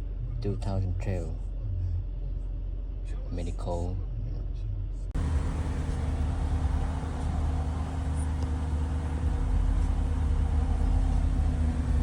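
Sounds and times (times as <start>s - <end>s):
car engine idling: 5.2s - 12.0s.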